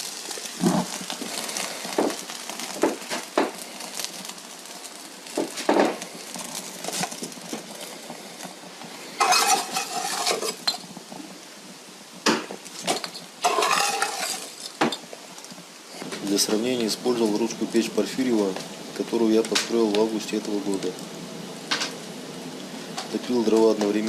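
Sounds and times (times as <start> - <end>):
metal cookware clinking: 9.2 - 10.8, 13.4 - 14.6
metal cookware scraping: 9.2 - 10.8, 12.9 - 14.8.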